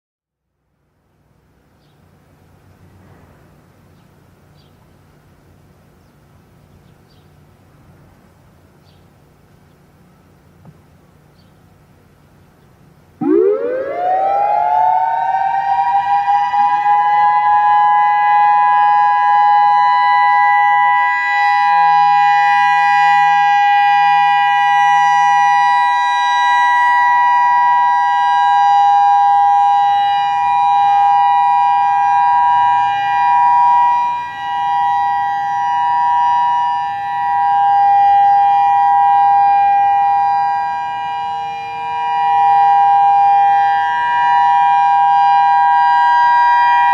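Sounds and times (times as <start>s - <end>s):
warning siren two-note chord: 13.2s - 46.9s.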